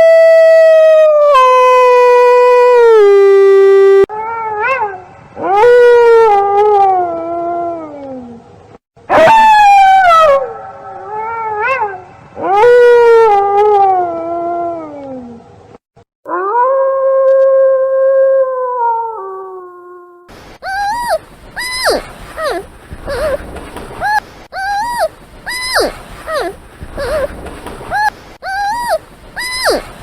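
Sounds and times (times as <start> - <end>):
wolf howling: 20.6 - 23.4, 24.0 - 27.3, 27.9 - 30.0.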